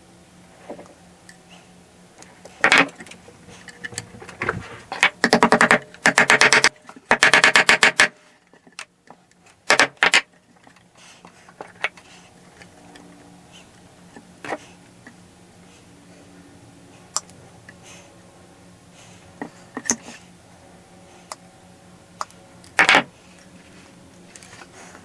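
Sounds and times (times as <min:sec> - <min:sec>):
faint low hum: 0:08.1 - 0:25.0.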